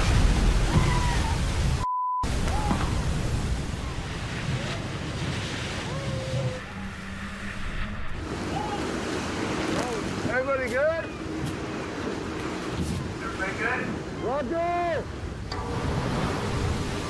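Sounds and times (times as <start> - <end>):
seawater crashing across deck: 0.0 - 14.0, 15.6 - 17.0
wind: 0.0 - 17.0
censor bleep: 1.8 - 2.3.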